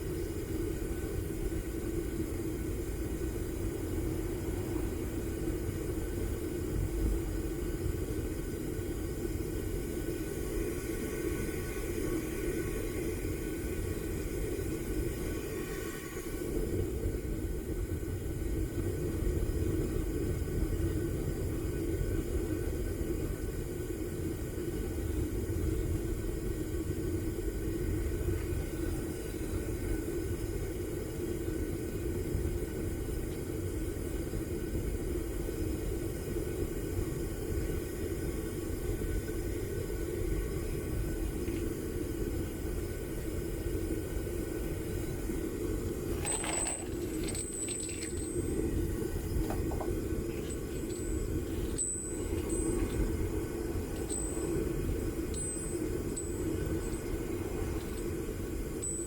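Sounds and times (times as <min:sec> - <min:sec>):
metal clatter with high ring: 0:46.1 - 0:59.0.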